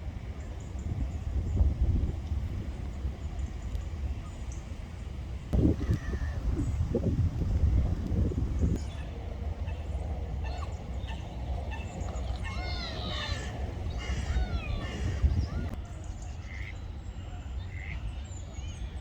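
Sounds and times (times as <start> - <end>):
steady low rumble: 0.0 - 15.8
birds calling: 5.5 - 19.0.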